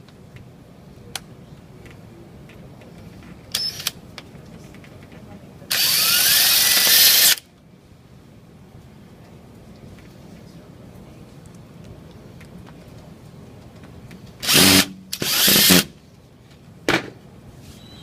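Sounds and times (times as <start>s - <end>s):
power drill driving screws: 5.7s - 7.4s, 14.4s - 15.9s.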